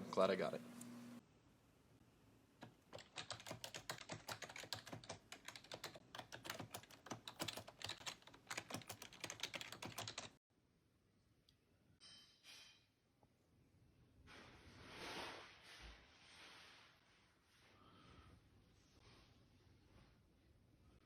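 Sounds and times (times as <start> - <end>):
fast typing on keyboard: 2.6 - 10.4.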